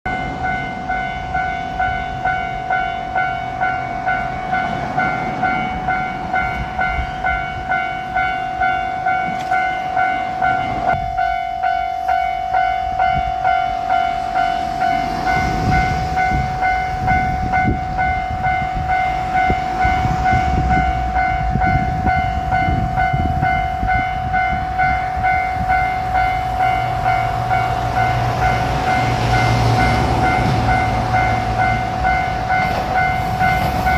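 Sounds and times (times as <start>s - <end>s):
diesel train rumble and wheel clatter: 0.1s - 33.9s
level crossing warning bell ringing: 0.1s - 33.9s.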